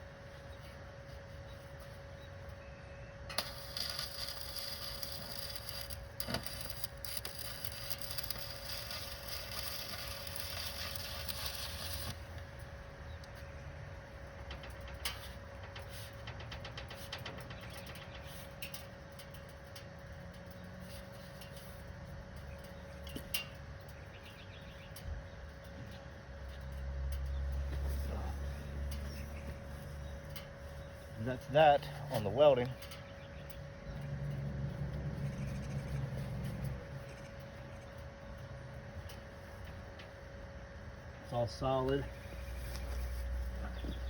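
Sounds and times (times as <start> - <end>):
steady hum: 0.0 - 44.0
welding arc crackling: 3.3 - 24.0, 26.2 - 33.7
faint crackle and ticking: 3.3 - 44.0.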